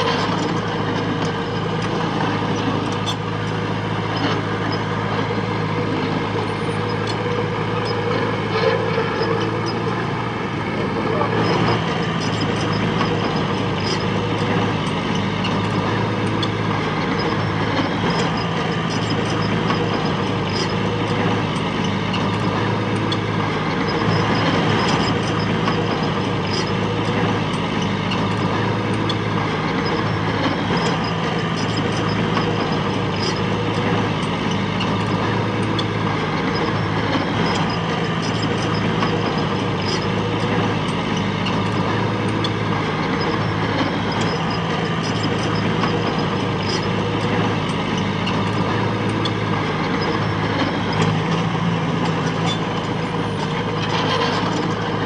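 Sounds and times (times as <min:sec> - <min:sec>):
heavy machinery diesel engine: 0:00.0 - 0:55.0.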